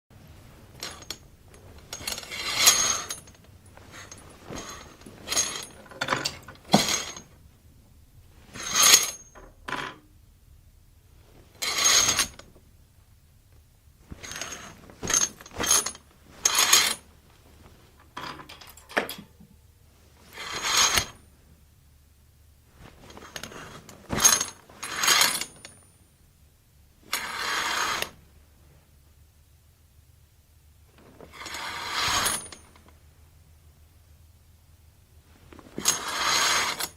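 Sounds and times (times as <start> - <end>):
curtain hangers scraping along rod: 1.8 - 7.3, 11.6 - 12.4, 14.2 - 17.0, 20.3 - 21.2, 23.1 - 25.6, 27.1 - 28.2, 31.3 - 32.7, 35.8 - 36.9.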